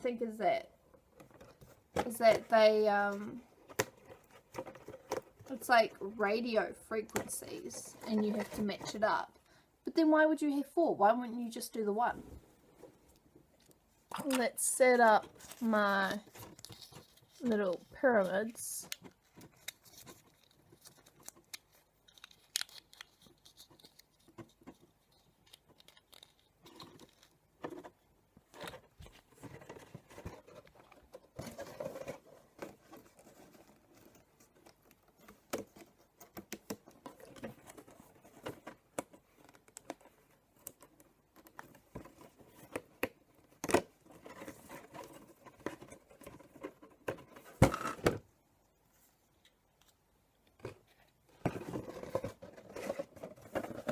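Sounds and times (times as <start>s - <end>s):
packaging rustling and tearing: 15.2s - 27.5s.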